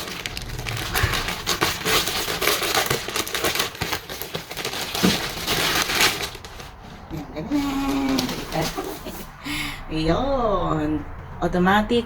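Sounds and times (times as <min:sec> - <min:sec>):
packaging crinkling and rustling: 0:00.0 - 0:09.2.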